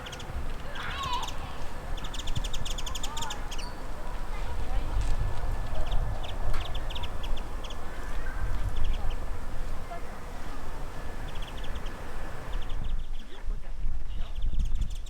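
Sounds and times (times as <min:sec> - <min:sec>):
high bird chirps: 0:00.0 - 0:04.2, 0:05.8 - 0:13.0.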